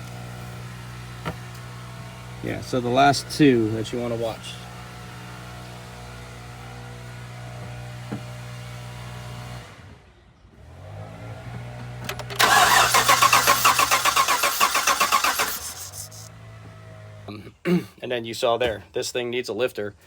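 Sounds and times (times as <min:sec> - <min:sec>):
starter cranking engine: 0:12.1 - 0:16.3.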